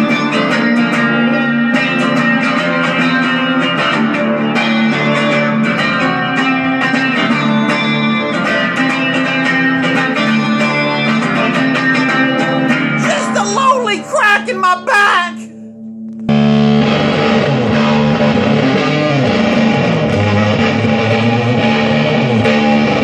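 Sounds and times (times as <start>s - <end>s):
guitar plucked and strummed: 0.0s - 23.0s.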